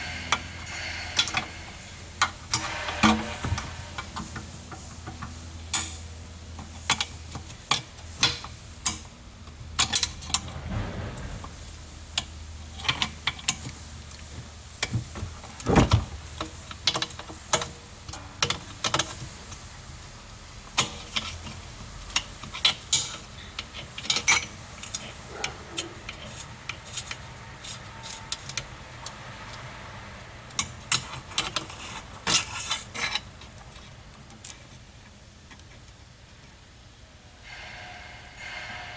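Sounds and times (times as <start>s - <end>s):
heavy knock: 0.0s - 4.6s, 10.3s - 12.5s.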